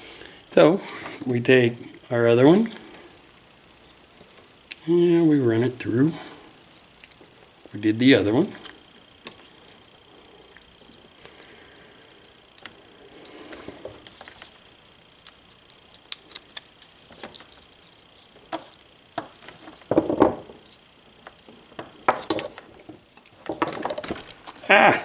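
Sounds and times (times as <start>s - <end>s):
wire connectors clicking and rattling: 6.1s - 7.8s, 12.1s - 24.6s.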